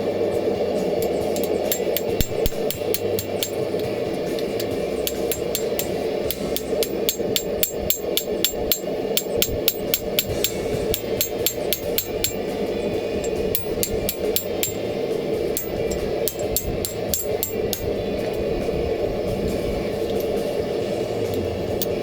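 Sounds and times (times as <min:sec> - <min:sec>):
steady hum: 0:00.0 - 0:22.0
hammer ringing on anvil: 0:01.0 - 0:18.0.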